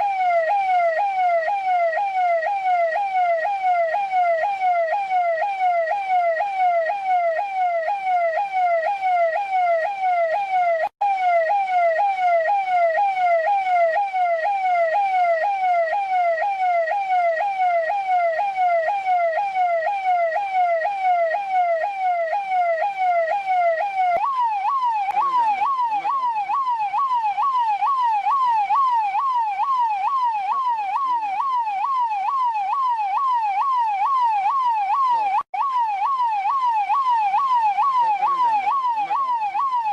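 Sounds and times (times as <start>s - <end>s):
police siren yelping: 0.0s - 39.9s.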